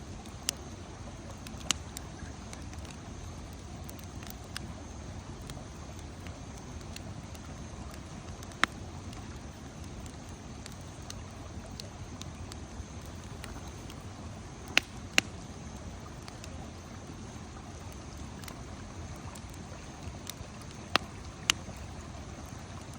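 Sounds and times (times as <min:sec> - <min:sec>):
campfire burning with crackles: 0:00.0 - 0:22.9
sharp fire pops: 0:09.8 - 0:15.5.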